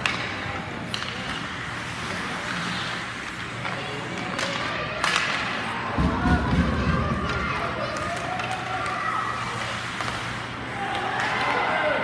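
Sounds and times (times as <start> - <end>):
spectators' voices: 0.0 - 12.0.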